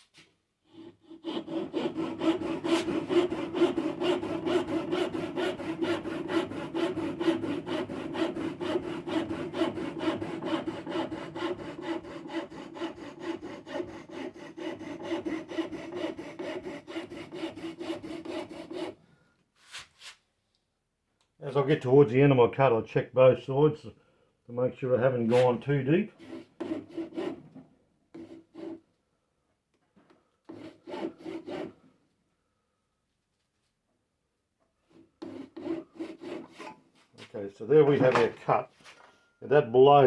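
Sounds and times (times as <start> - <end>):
saw cutting timber: 0.7 - 19.0, 25.2 - 27.4, 28.2 - 28.8, 30.5 - 31.8, 34.9 - 36.8, 37.7 - 38.4.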